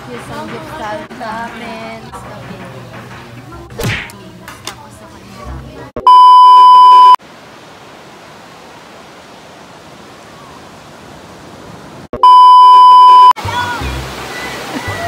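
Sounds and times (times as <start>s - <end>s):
loud electronic beeps: 6.0s - 7.2s, 12.2s - 13.4s.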